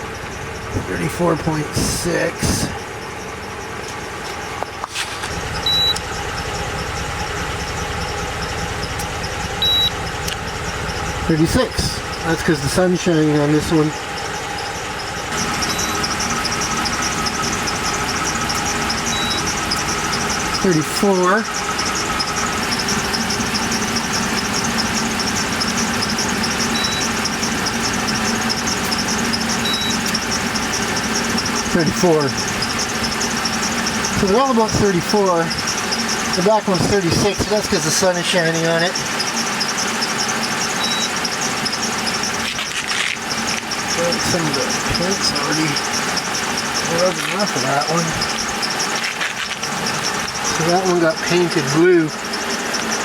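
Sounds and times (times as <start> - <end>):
engine idling: 0.0 - 53.0
thermometer high beeps: 5.6 - 6.1, 9.6 - 10.0, 15.4 - 23.8, 26.0 - 27.8, 28.5 - 33.2, 40.8 - 42.2.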